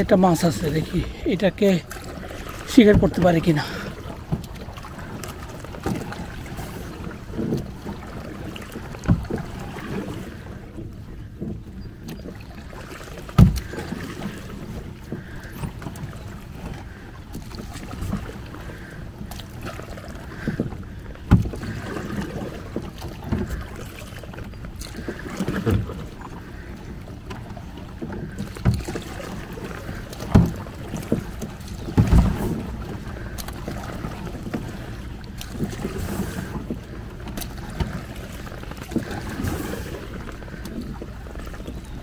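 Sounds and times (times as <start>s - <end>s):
paddle splashes: 0.0s - 42.0s
knocks against boat: 2.7s - 4.6s, 7.3s - 10.1s, 13.2s - 18.4s, 19.3s - 26.4s, 27.3s - 34.8s.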